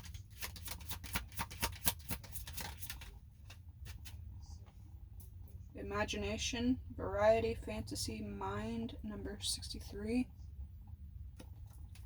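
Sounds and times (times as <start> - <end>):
cards being shuffled: 0.0 - 4.2.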